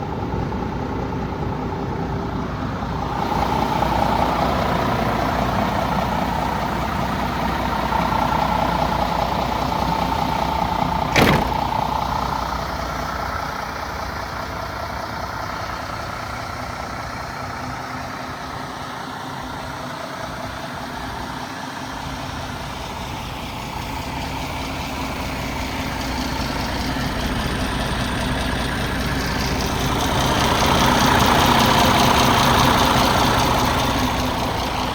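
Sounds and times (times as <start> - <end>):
diesel truck idling: 0.0 - 34.9
sharp click: 11.1 - 11.8.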